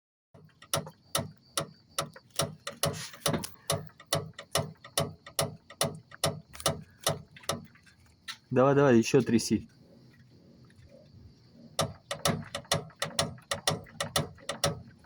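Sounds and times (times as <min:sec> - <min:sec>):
car suspension link knocking: 0:00.4 - 0:07.9, 0:11.8 - 0:15.0.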